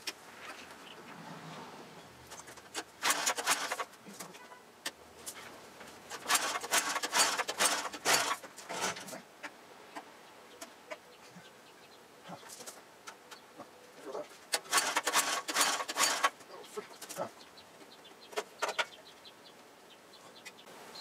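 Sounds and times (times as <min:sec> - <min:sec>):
generator engine cranking: 0:02.3 - 0:03.9, 0:06.1 - 0:09.0, 0:14.5 - 0:16.4.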